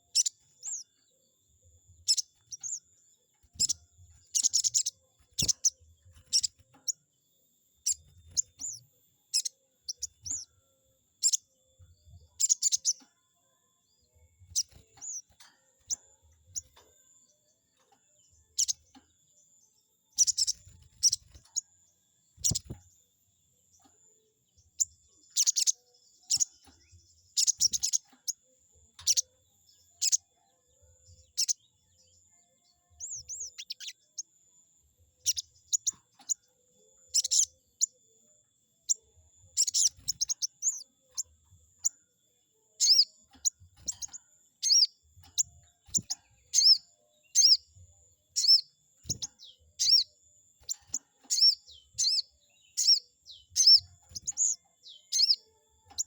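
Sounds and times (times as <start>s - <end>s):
bird chirping and whistling: 3.6s - 6.6s, 7.8s - 10.4s, 20.2s - 21.4s, 22.4s - 22.8s, 27.4s - 28.0s, 37.1s - 37.5s, 39.6s - 40.8s, 42.8s - 43.1s, 43.8s - 47.6s, 48.4s - 55.4s.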